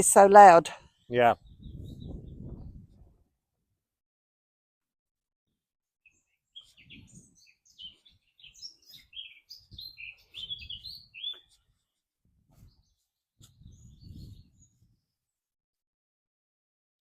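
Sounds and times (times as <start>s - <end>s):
bird warbling song: 0.9s - 2.7s, 6.0s - 11.7s, 12.6s - 15.1s
microphone rumbling: 1.4s - 3.2s.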